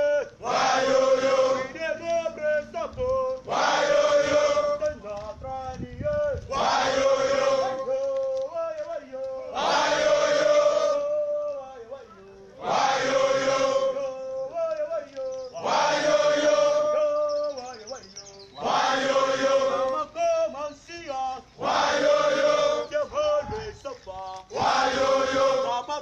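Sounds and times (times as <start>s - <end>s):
lead voice singing: 0.0s - 26.0s
men chanting in unison: 0.0s - 26.0s.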